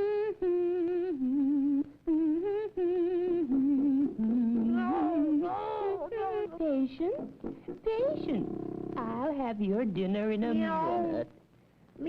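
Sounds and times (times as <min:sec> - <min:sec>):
person humming a slow tune: 0:00.0 - 0:08.4.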